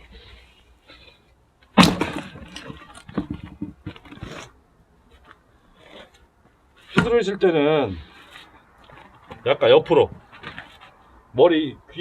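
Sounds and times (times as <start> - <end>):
wood clattering: 1.7 - 7.4
axe striking log: 1.8 - 2.9.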